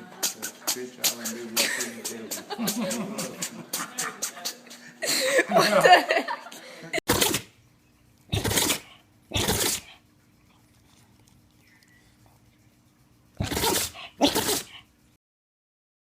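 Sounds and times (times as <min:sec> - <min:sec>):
animal sneezing: 0:07.1 - 0:07.5, 0:08.3 - 0:10.0, 0:13.4 - 0:14.9.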